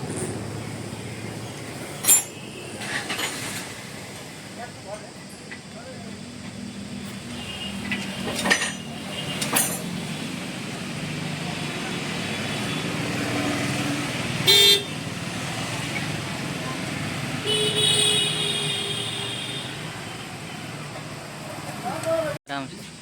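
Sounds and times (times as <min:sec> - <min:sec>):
road traffic: 0:00.0 - 0:23.0
vehicle horn: 0:07.3 - 0:09.7, 0:14.4 - 0:15.1, 0:17.4 - 0:20.4.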